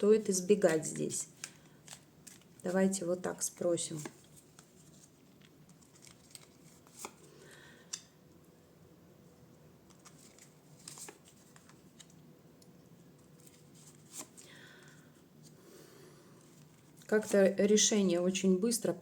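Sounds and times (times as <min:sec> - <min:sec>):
cards shuffling and snapping: 0:00.6 - 0:02.7, 0:03.8 - 0:08.1, 0:09.9 - 0:12.2, 0:13.4 - 0:14.6.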